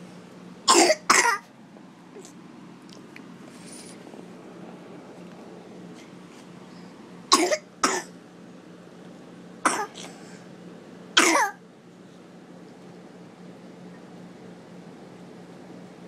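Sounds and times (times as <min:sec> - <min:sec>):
person coughing: 0:00.7 - 0:01.5, 0:07.3 - 0:08.1, 0:09.7 - 0:10.2, 0:11.2 - 0:11.6.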